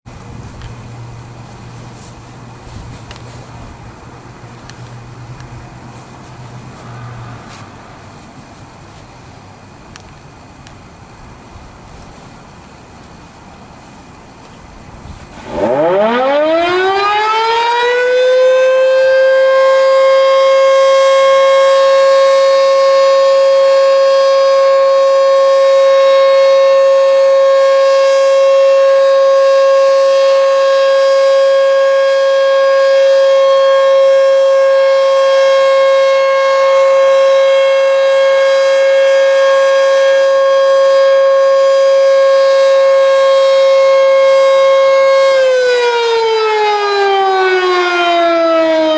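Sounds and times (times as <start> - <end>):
faint lower siren tones: 15.2 - 48.9
warning siren winding up: 15.3 - 48.9.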